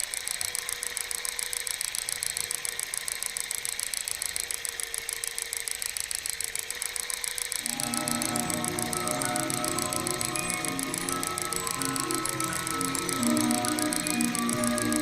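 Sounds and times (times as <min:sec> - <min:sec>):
music box clockwork clicking: 0:00.0 - 0:15.0
music box plucked notes: 0:07.6 - 0:15.0.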